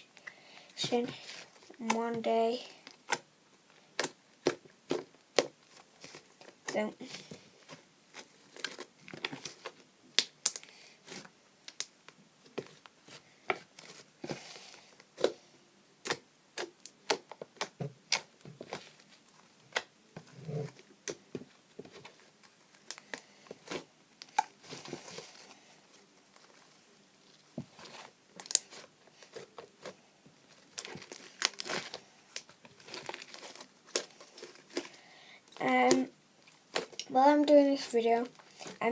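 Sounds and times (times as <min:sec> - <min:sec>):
slime popping and crackling: 0:03.9 - 0:06.9, 0:08.1 - 0:12.8, 0:16.0 - 0:22.1, 0:27.6 - 0:34.9, 0:35.5 - 0:38.9.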